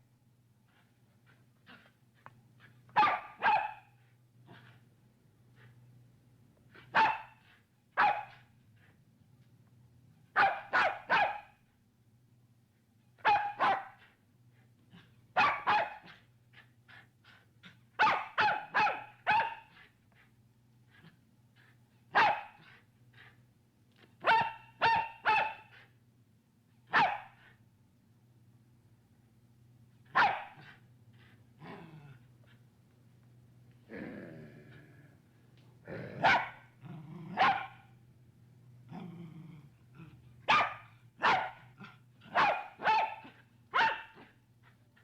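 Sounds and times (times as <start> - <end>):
faint low hum: 0.0 - 45.0
small dog barking: 3.0 - 3.9, 6.9 - 7.4, 8.0 - 8.4, 10.4 - 11.6, 13.2 - 14.0, 15.4 - 16.2, 18.0 - 19.7, 22.1 - 22.6, 24.2 - 25.8, 26.9 - 27.4, 30.1 - 30.7, 36.2 - 36.7, 37.3 - 37.9, 40.5 - 44.3.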